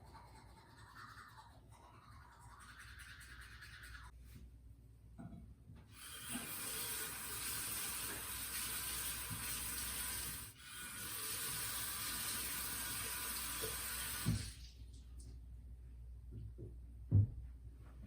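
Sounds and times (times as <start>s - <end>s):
water running from a tap: 6.0s - 15.0s.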